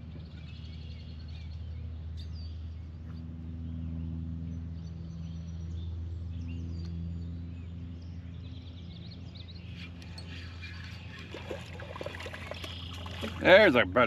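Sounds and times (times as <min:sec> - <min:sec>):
low hum: 0:00.0 - 0:14.0
birds chirping: 0:05.2 - 0:14.0.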